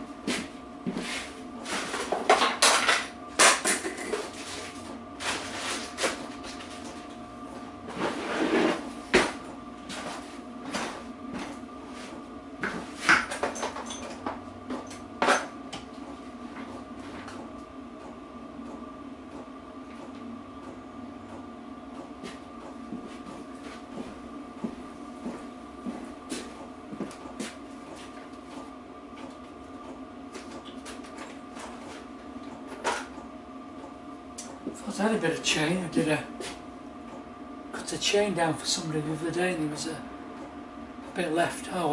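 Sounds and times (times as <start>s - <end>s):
steady background hum: 0.0s - 41.9s
metal tools clattering: 13.3s - 14.2s.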